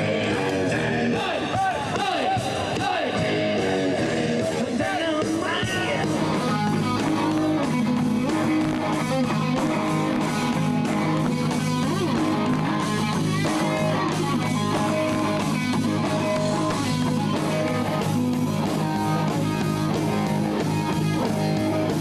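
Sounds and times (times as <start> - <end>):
bass guitar: 0.0 - 22.0
steady drum beat: 0.0 - 22.0
strummed electric guitar: 0.0 - 22.0.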